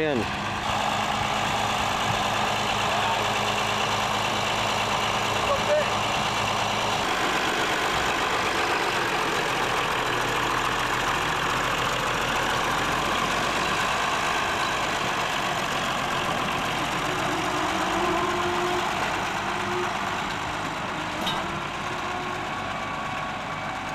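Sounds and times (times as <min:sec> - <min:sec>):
tractor diesel engine running: 0:00.0 - 0:23.9.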